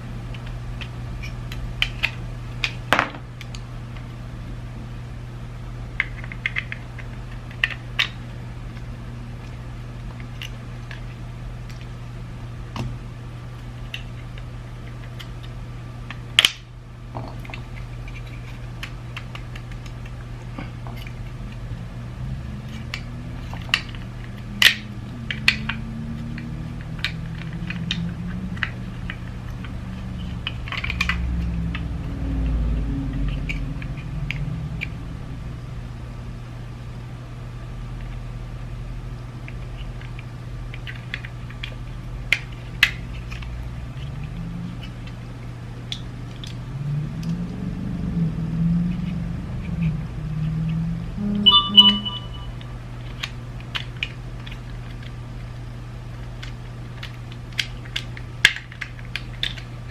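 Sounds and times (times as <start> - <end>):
steady low hum: 0.0 - 59.9
plastic parts clicking: 56.4 - 59.7.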